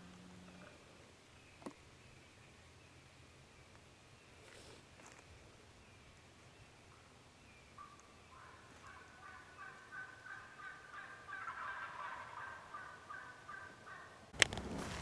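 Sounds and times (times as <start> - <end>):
turkey gobbling: 7.8 - 15.0.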